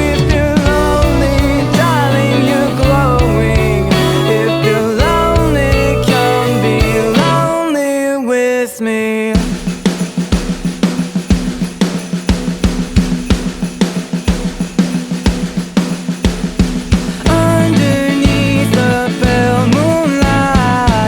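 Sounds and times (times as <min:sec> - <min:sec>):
melodic phrase: 0:00.0 - 0:07.6
drum-kit beat: 0:00.0 - 0:07.7, 0:09.4 - 0:21.0.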